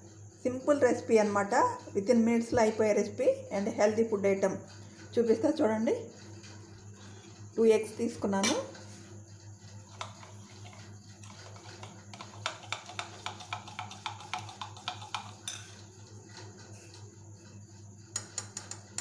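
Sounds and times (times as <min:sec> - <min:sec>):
steady low hum: 0:00.0 - 0:18.1
metal utensil clinking against bowl: 0:11.5 - 0:15.8.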